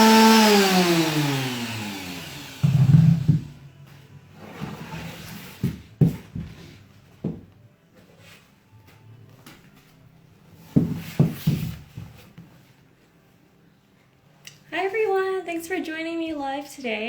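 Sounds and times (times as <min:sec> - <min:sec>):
objects knocking and thumping: 0:02.5 - 0:03.8, 0:05.4 - 0:07.6, 0:10.6 - 0:12.4.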